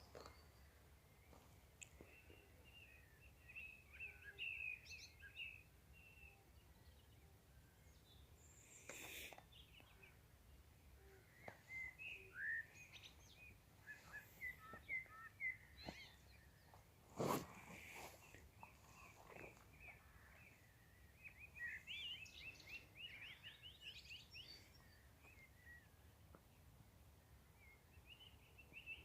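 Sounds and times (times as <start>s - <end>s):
faint birds chirping: 0.0s - 29.0s.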